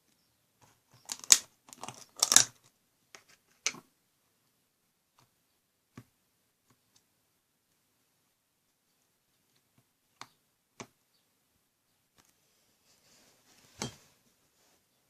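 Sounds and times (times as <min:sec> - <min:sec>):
crinkling handling noise: 0:00.6 - 0:03.8.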